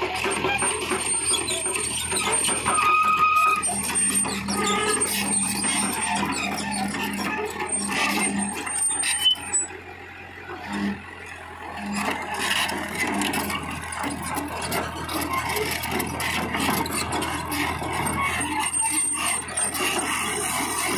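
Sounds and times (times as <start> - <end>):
rattles and knocks: 0.0 - 8.8, 11.6 - 20.9
excavator engine running: 0.0 - 20.9.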